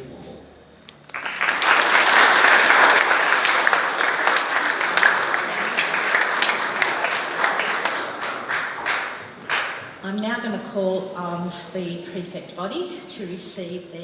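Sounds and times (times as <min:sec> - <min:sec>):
audience applauding: 0:01.1 - 0:10.2.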